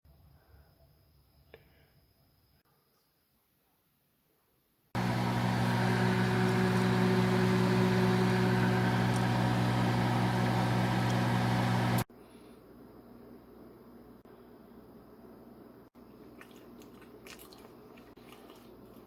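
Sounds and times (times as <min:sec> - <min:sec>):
machine hum: 0:05.0 - 0:12.1.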